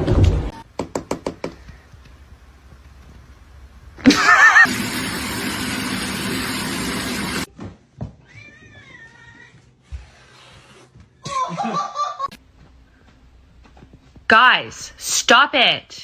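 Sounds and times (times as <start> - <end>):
cat meowing: 8.2 - 9.6.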